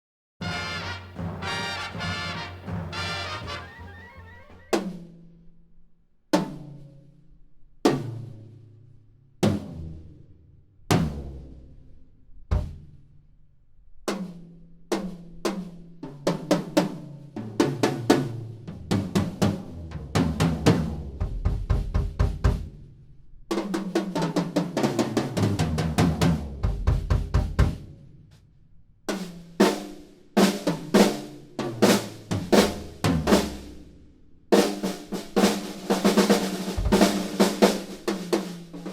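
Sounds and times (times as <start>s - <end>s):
drum kit being played: 0.4s - 4.8s, 34.6s - 38.9s.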